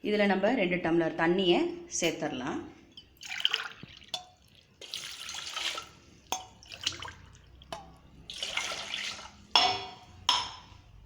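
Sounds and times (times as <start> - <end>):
water pouring into vessel: 3.1 - 9.5.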